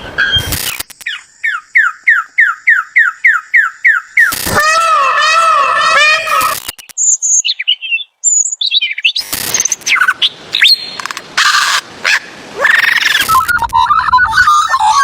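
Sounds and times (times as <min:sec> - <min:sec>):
short harsh bird calls: 0:03.6 - 0:06.8.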